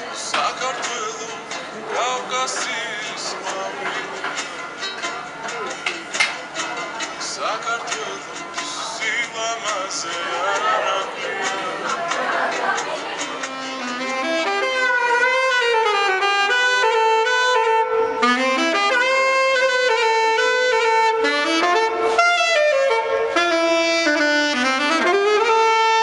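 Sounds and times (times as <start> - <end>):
wind instrument solo melody: 13.6 - 26.0.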